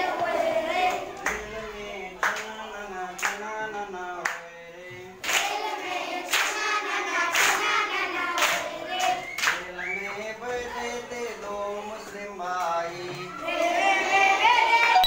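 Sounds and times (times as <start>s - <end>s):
children singing in chorus: 0.0s - 2.0s, 5.2s - 11.4s, 12.9s - 15.0s
hand claps: 2.2s - 2.6s, 3.2s - 3.4s, 5.2s - 5.6s, 6.3s - 6.7s, 7.3s - 7.7s, 8.4s - 10.0s.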